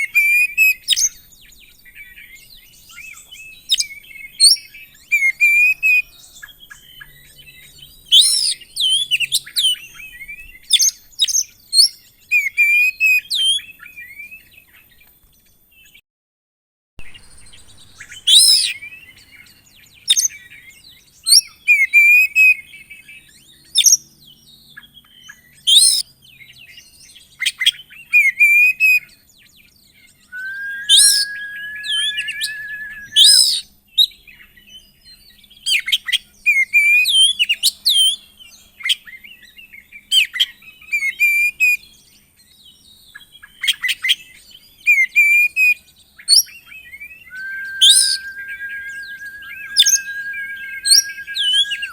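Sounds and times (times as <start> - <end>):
bird singing whistled song: 0.0 - 14.6, 17.0 - 26.1, 30.1 - 34.1, 44.8 - 51.9.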